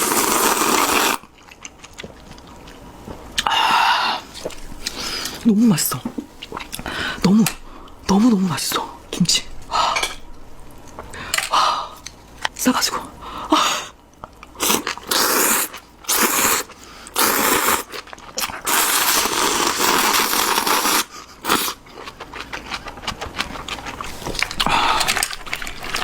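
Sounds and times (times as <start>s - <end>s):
slurping noodles: 0.0s - 1.6s, 14.6s - 26.0s
crunchy chewing: 0.4s - 3.5s, 14.2s - 26.0s.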